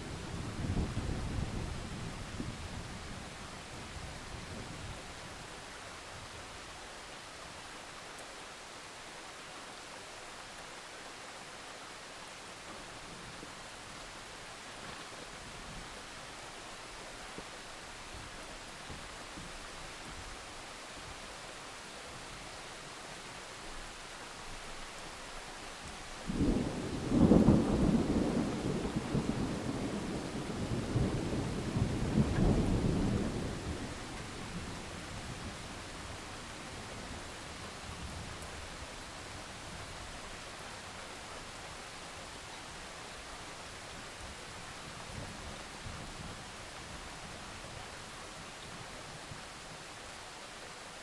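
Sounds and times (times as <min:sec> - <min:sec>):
steady rain: 0:00.0 - 0:51.0
thunder rumbling: 0:26.3 - 0:37.3.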